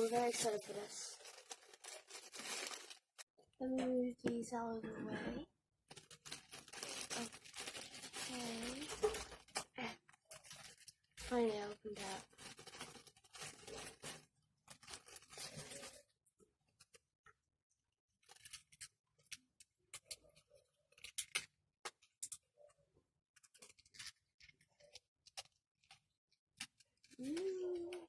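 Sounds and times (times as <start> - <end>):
packaging rustling: 0.0 - 3.2, 5.9 - 16.1
sharp clicks of packaging: 5.9 - 16.0.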